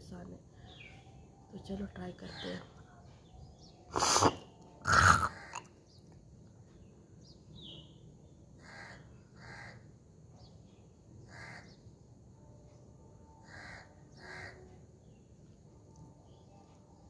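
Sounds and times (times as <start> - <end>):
faint outdoor background noise: 0.0 - 17.0
person hawking phlegm: 3.9 - 5.7.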